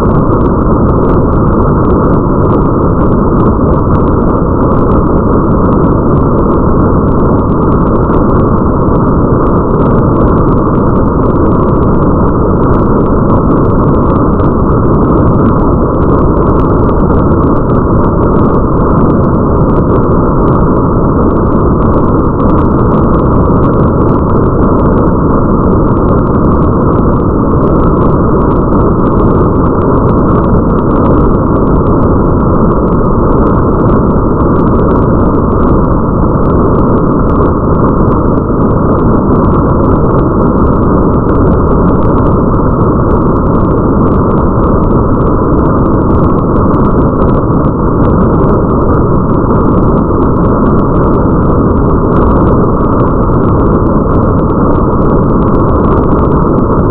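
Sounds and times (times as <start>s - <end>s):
deep rumble: 0.0s - 56.9s
rain rushing: 20.5s - 47.6s.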